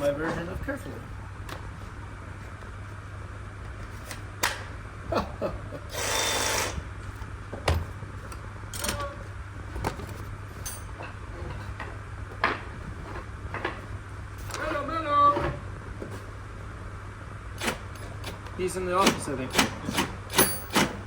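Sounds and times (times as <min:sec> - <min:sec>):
steady low hum: 0:00.0 - 0:21.0
power tool burst: 0:05.9 - 0:06.8.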